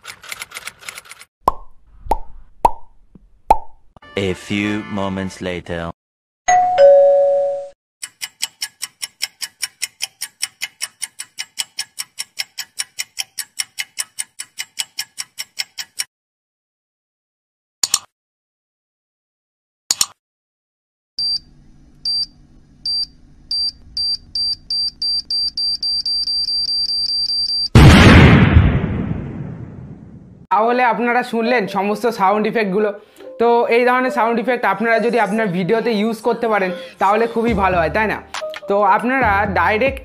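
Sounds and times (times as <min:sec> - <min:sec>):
electronic beep: 0:22.9 - 0:27.7.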